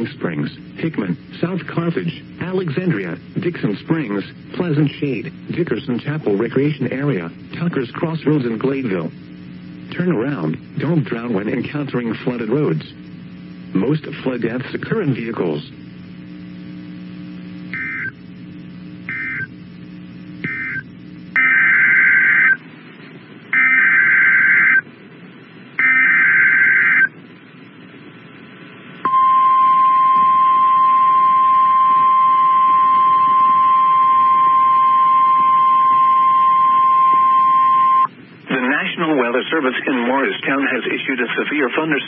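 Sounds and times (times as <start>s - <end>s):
steady warning alarm tone: 8.3s - 22.6s, 23.5s - 24.9s, 25.8s - 27.1s, 29.0s - 38.1s
digital data tone bursts: 17.7s - 18.2s, 19.0s - 19.5s, 20.4s - 22.6s, 23.5s - 24.8s, 25.8s - 27.1s.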